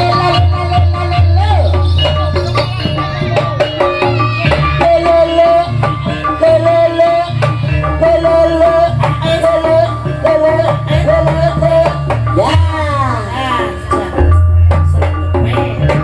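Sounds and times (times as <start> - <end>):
bass: 0.0 - 16.0
drum and percussion strikes: 0.0 - 16.0
wavering melody line: 0.0 - 16.0.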